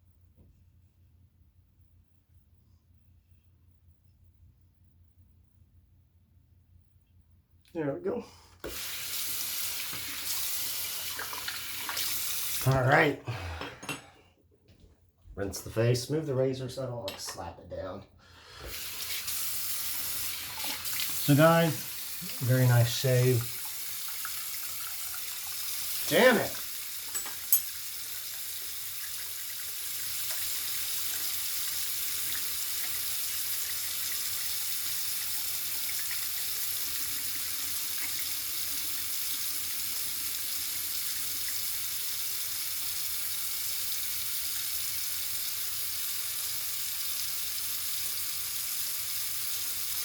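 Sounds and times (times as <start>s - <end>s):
tap running into sink: 8.6s - 9.0s.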